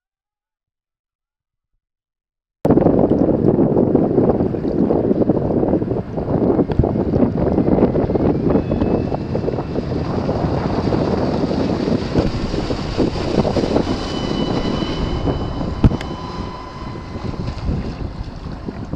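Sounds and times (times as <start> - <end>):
wind buffeting microphone: 2.7 - 18.9
faint thin whine: 7.8 - 18.9.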